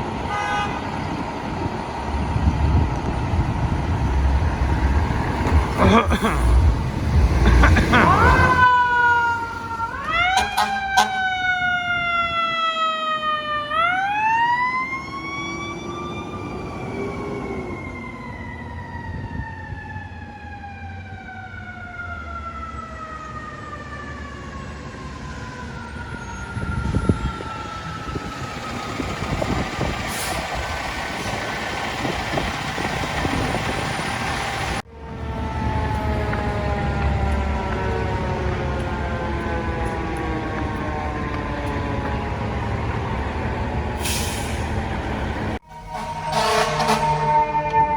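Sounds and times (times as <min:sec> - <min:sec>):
truck engine: 0:00.0 - 0:08.7, 0:09.4 - 0:11.3, 0:25.1 - 0:47.9
street noise: 0:00.0 - 0:47.9.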